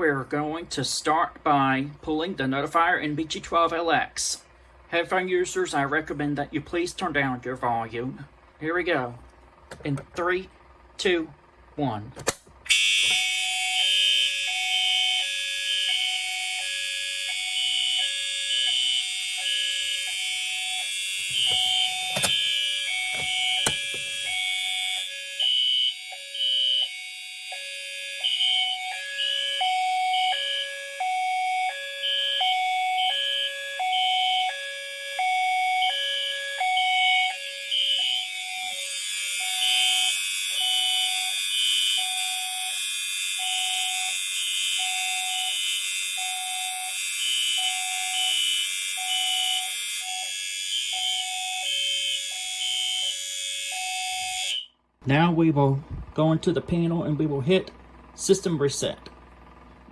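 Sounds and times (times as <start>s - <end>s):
pulsing horn tone: 12.7s - 34.5s
two-tone electronic alarm: 12.7s - 54.8s.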